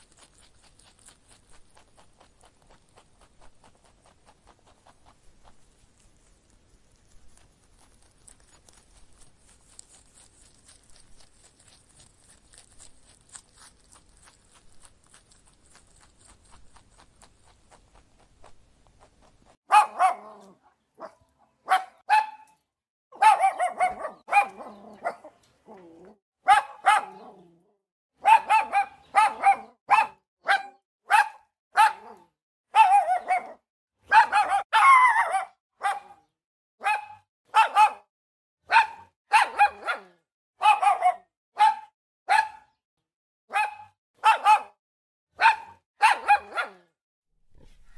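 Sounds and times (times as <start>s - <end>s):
dog barking: 19.7s - 25.4s, 26.4s - 27.5s, 28.2s - 38.1s, 38.7s - 42.8s, 43.5s - 44.8s, 45.4s - 47.9s.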